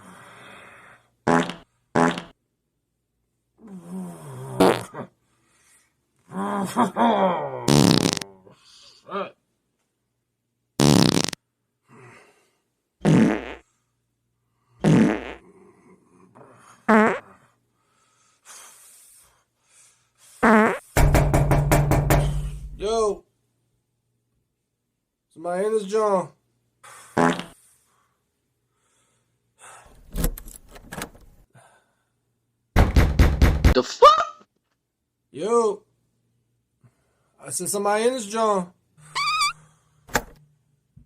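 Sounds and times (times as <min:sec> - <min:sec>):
buzzing farts: 0:01.3 - 0:02.4, 0:04.6 - 0:05.1, 0:07.7 - 0:08.3, 0:10.8 - 0:11.4, 0:13.0 - 0:13.6, 0:14.8 - 0:15.4, 0:16.9 - 0:17.2, 0:20.4 - 0:20.9, 0:27.2 - 0:27.6, 0:39.2 - 0:39.6.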